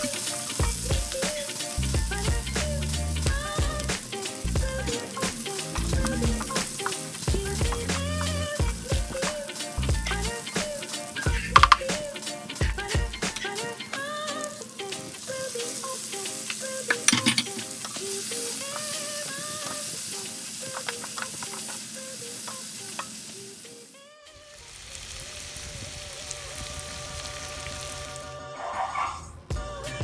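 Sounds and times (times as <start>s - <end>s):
chicken sizzling in a pan: 0.0s - 28.4s
utensil clicks: 9.2s - 12.2s.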